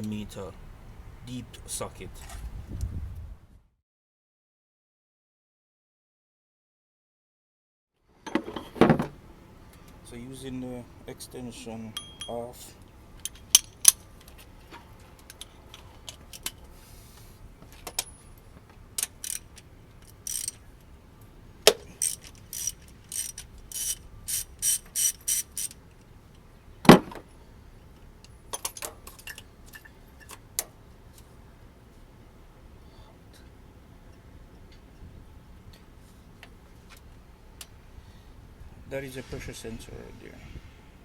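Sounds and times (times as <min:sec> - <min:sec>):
metal tool clicks: 0:13.2 - 0:14.0, 0:19.0 - 0:20.7
ratchet handle clicking: 0:13.2 - 0:14.0, 0:19.0 - 0:20.6, 0:21.7 - 0:25.8.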